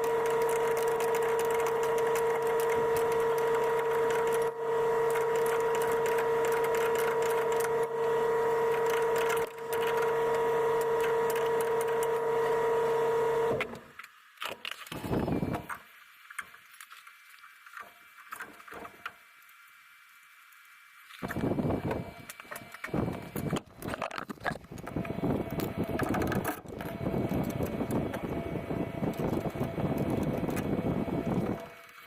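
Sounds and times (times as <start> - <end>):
power tool running: 0.0 - 14.0, 24.7 - 32.0.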